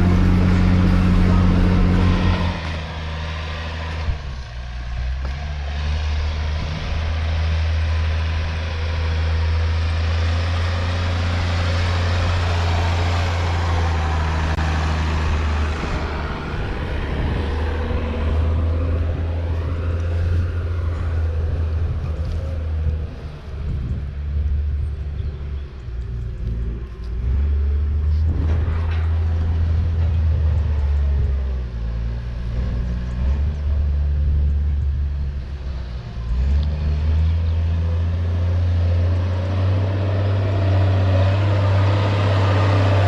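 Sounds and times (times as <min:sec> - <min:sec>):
tractor engine droning: 0:00.0 - 0:43.0.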